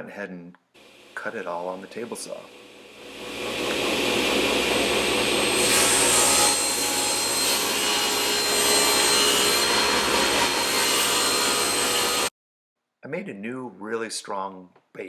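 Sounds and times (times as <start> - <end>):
table saw cutting wood: 0.8 - 12.3.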